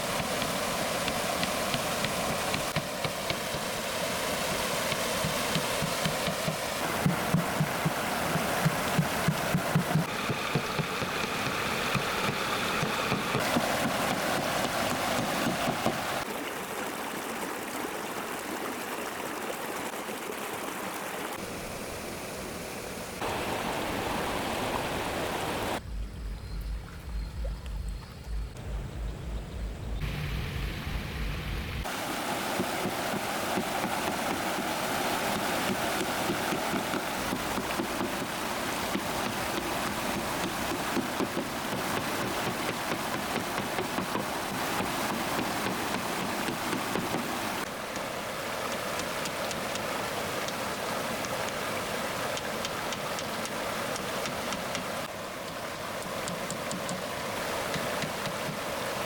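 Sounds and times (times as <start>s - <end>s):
rushing water: 0.0s - 25.8s, 30.0s - 59.0s.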